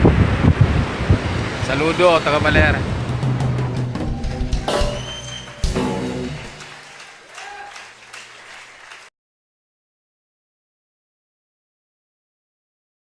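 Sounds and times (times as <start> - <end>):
background music: 2.7 - 7.2.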